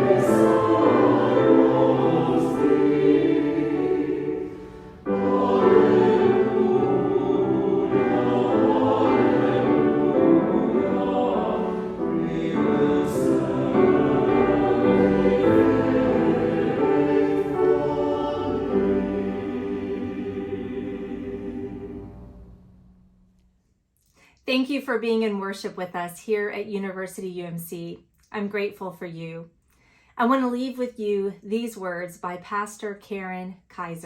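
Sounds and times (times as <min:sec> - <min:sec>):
choir singing chords: 0:00.0 - 0:23.1.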